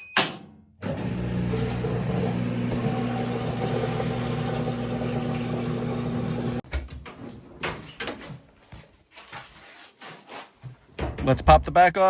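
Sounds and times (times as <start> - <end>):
washing machine motor humming: 0.8 - 6.6.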